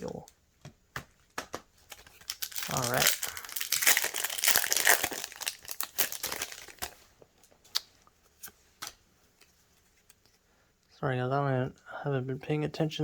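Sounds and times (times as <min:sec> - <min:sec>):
foil wrapper crinkling: 0:01.9 - 0:07.0.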